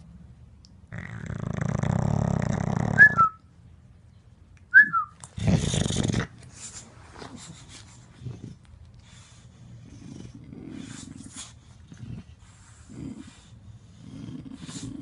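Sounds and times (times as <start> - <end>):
dog snoring: 0.9 - 3.4, 5.4 - 6.4, 9.6 - 15.0.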